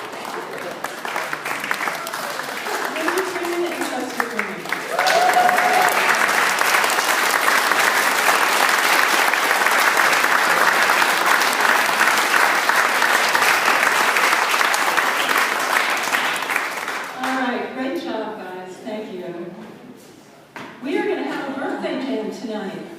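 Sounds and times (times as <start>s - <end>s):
crowd applauding: 0.0s - 17.4s.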